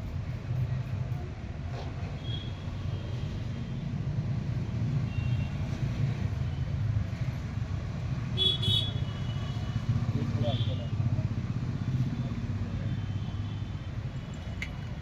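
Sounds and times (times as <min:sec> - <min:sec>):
street traffic rumble: 0:00.0 - 0:15.0.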